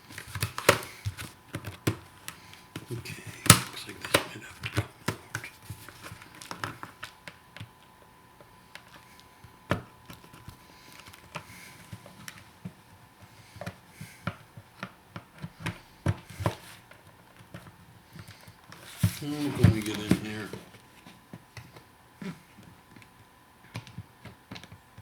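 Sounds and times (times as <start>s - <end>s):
knife scraping hard plastic: 0.1s - 7.0s
plastic snapping: 0.1s - 7.0s.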